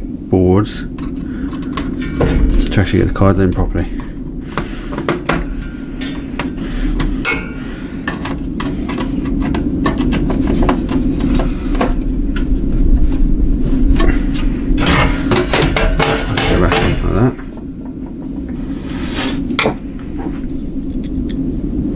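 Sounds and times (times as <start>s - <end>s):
steady low hum: 0.0s - 21.9s
metal parts clicking and knocking: 0.9s - 2.9s, 3.5s - 12.6s, 13.9s - 18.6s.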